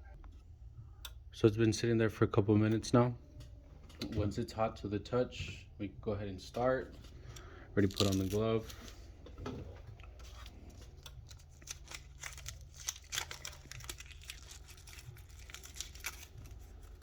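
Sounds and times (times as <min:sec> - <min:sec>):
small clicks and crinkling: 0:07.3 - 0:09.0, 0:09.9 - 0:17.0.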